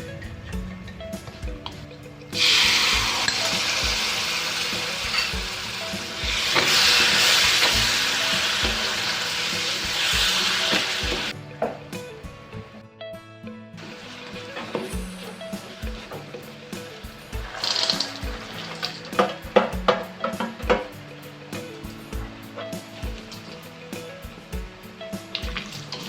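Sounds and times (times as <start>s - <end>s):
food sizzling in hot oil: 1.2s - 11.4s, 13.8s - 26.0s.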